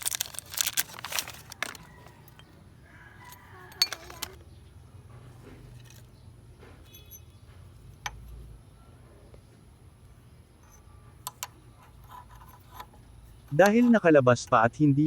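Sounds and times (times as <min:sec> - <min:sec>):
small metal parts clattering: 0:00.0 - 0:02.6, 0:03.2 - 0:04.4, 0:05.6 - 0:06.2, 0:06.8 - 0:08.4
light metallic clinks: 0:03.2 - 0:04.4, 0:06.8 - 0:08.5.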